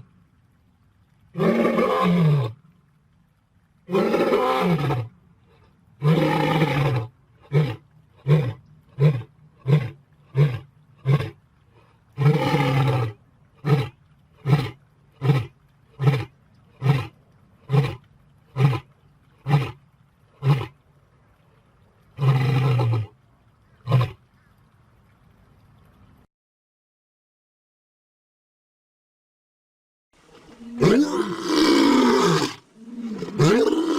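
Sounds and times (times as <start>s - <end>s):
lion roaring: 6.0s - 11.4s, 12.2s - 19.8s, 30.5s - 33.9s.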